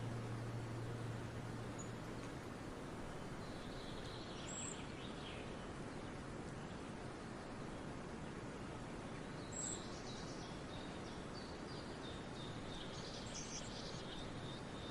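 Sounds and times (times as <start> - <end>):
small birds chirping: 0.0 - 5.5
faint outdoor background noise: 0.0 - 14.9.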